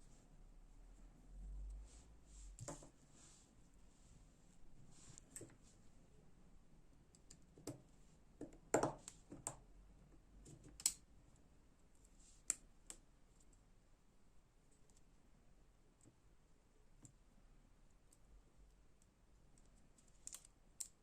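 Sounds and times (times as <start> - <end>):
small metal parts clicking: 20.0 - 21.0.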